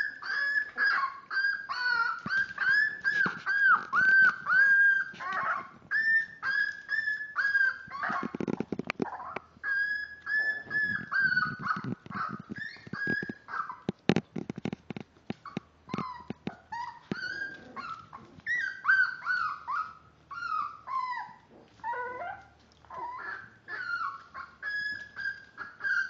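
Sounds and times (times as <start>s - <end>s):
puppies whining and yelping: 0.0s - 26.0s
scuffling and rustling: 1.7s - 9.2s, 10.2s - 19.8s.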